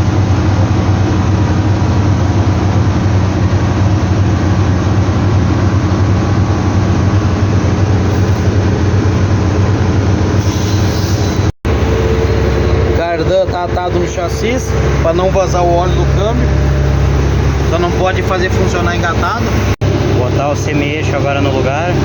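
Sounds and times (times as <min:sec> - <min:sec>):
machinery running with deep hum: 0:00.0 - 0:22.0.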